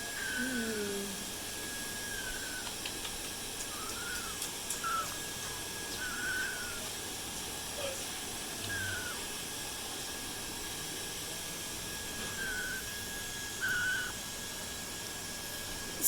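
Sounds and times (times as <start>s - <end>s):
parrot whistling: 0.0s - 0.8s, 1.6s - 2.8s, 3.6s - 6.9s, 8.6s - 9.3s, 12.1s - 14.2s.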